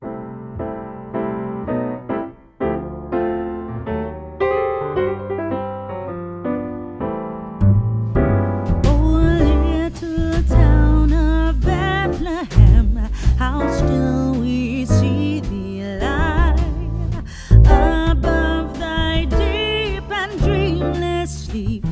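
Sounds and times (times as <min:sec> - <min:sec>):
heavy beat with bass: 0:08.2 - 0:14.2, 0:14.9 - 0:21.9
person singing: 0:08.9 - 0:21.9.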